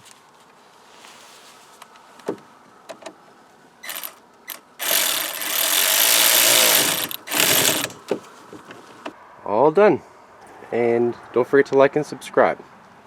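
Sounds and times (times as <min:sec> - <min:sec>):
metal hand tools clicking: 0:03.8 - 0:08.0
noisy mechanical sound: 0:03.8 - 0:08.2.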